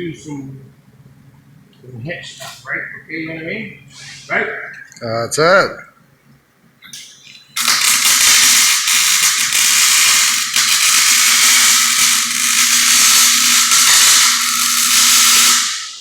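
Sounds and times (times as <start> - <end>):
welding arc crackling and hissing: 7.6 - 16.0.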